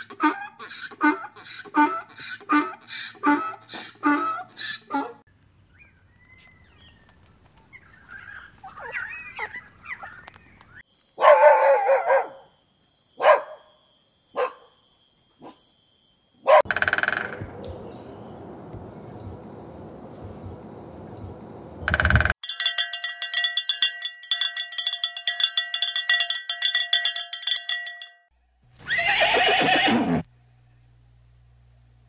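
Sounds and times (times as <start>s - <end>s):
dog barking: 4.9s - 5.2s, 8.8s - 10.1s, 11.2s - 12.6s, 13.2s - 13.7s, 14.3s - 14.7s, 15.4s - 15.6s, 16.4s - 16.7s.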